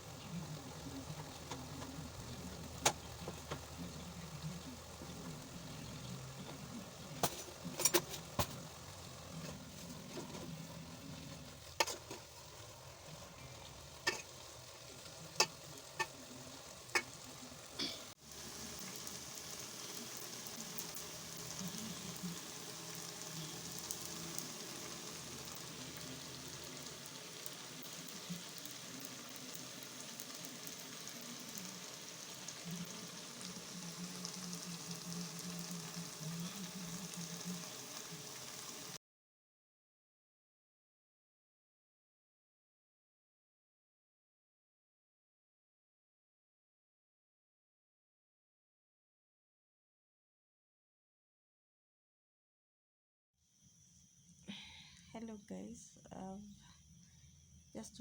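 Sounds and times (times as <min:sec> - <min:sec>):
food sizzling in a pan: 0:00.0 - 0:39.0
utensil clicking against pan: 0:16.9 - 0:17.2.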